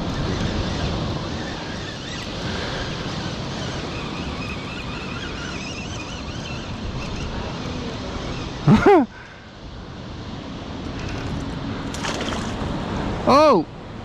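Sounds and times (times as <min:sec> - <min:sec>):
wind buffeting microphone: 0:00.0 - 0:08.7
ocean surf: 0:00.0 - 0:14.0.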